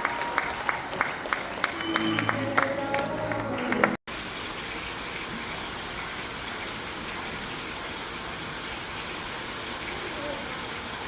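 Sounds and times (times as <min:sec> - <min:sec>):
applause: 0:00.0 - 0:04.0
music: 0:01.8 - 0:04.0.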